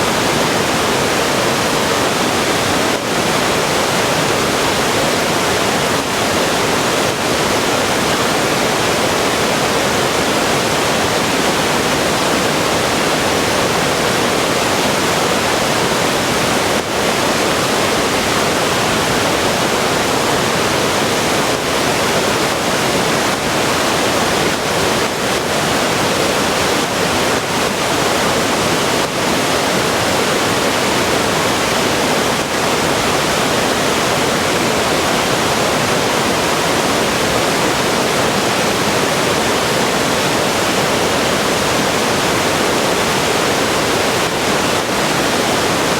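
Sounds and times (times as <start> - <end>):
waterfall rushing: 0.0 - 45.9.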